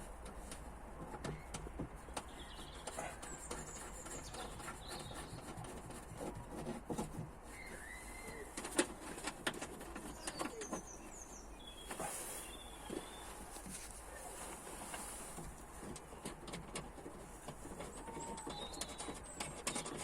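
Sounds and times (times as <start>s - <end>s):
birds chirping: 1.2s - 5.9s, 9.8s - 14.4s, 15.7s - 20.0s.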